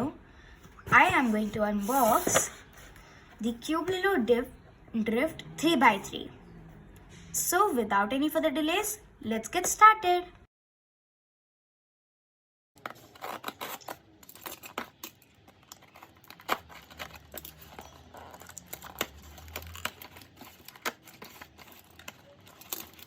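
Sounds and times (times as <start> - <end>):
packaging rustling and tearing: 12.8 - 23.0.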